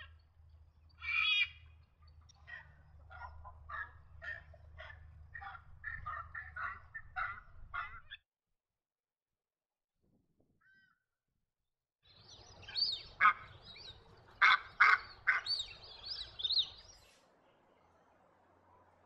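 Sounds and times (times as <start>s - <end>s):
ibis squawking: 1.0s - 1.6s, 2.3s - 8.2s, 12.6s - 17.0s.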